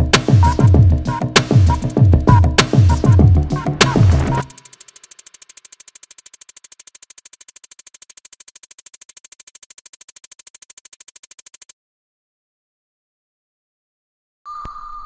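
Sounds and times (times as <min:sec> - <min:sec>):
rapid electronic pulsing music: 0:00.0 - 0:11.7.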